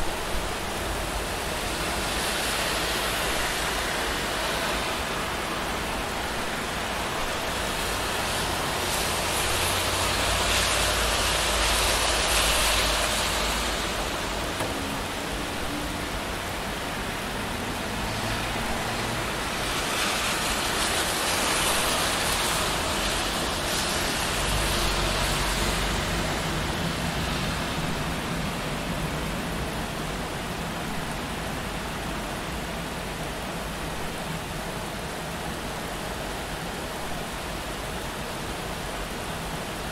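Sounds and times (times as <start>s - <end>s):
car tyres swishing on wet road: 0.0s - 39.9s
steady rain hiss: 0.0s - 39.9s.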